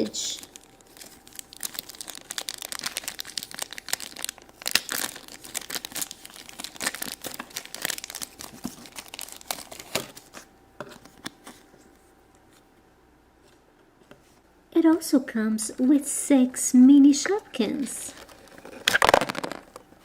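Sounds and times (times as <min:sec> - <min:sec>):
plastic packaging crinkling and tearing: 0:00.0 - 0:11.7, 0:17.7 - 0:19.8.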